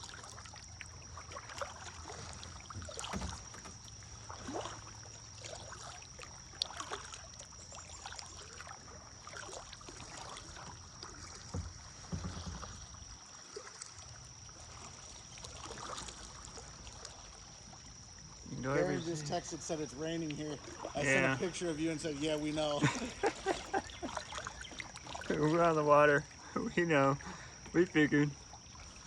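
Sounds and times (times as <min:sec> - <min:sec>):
paddle dipping in water: 0:00.0 - 0:29.0
light knocks: 0:02.7 - 0:03.9.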